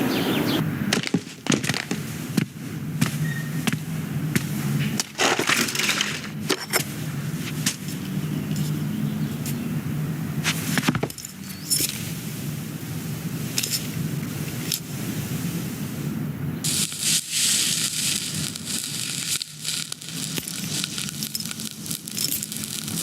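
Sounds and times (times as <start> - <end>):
crackling and hissing noise: 0.0 - 23.0
low steady hum: 0.0 - 23.0
bright hiss: 11.4 - 23.0.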